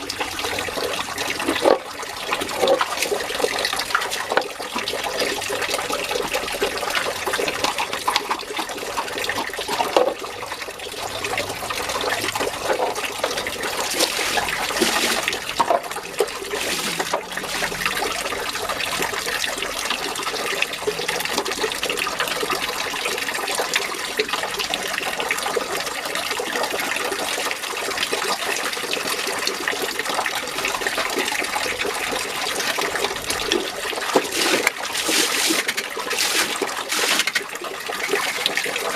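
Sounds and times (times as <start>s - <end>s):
running water splashing: 0.0s - 38.9s.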